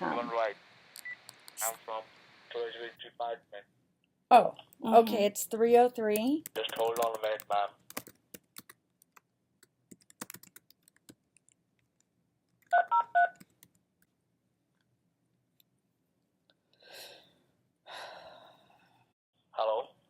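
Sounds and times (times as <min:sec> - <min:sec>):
faint hissy noises on phone line: 0:00.0 - 0:03.4
keyboard clicking: 0:06.1 - 0:12.8
touch-tone dialing beeps: 0:12.7 - 0:13.4.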